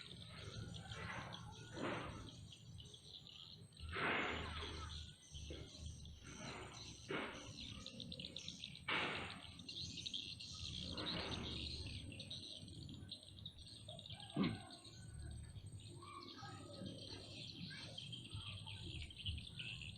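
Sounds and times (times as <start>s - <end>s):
high-pitched insect drone: 0.0s - 14.2s
birds chirping: 0.0s - 19.9s.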